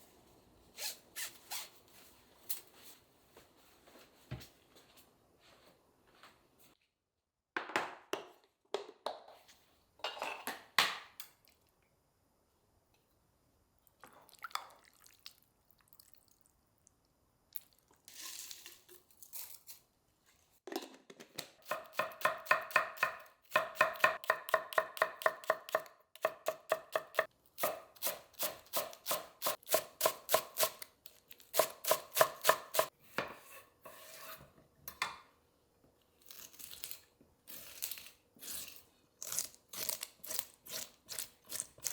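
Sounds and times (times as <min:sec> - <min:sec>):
knife chopping on cutting board: 0:21.6 - 0:30.8, 0:31.6 - 0:34.2.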